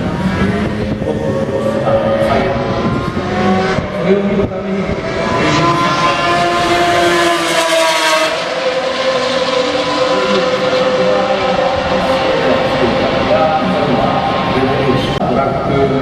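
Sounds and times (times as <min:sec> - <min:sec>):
car engine running at speed: 0:00.0 - 0:15.2.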